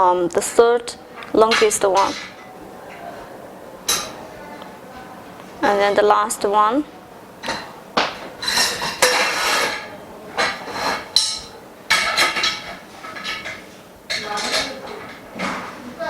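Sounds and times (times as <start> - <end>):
metal frame bars clinking: 8.4 - 15.6.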